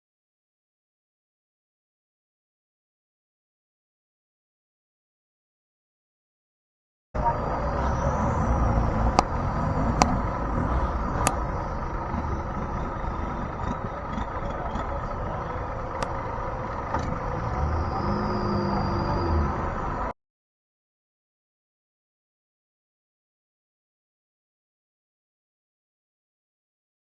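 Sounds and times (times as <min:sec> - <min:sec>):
boat engine rumbling: 0:07.2 - 0:20.1.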